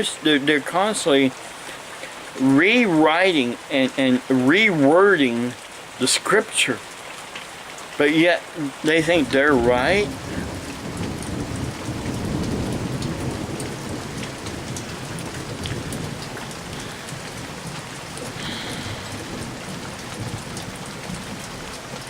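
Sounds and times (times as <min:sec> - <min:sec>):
rain falling: 0:00.0 - 0:22.0
raindrops ticking on surface: 0:00.0 - 0:22.0
thunder rumble: 0:09.0 - 0:21.5.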